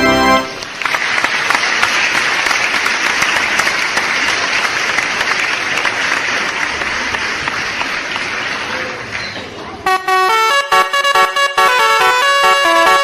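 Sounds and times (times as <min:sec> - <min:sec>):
crowd applauding: 0:00.0 - 0:10.1.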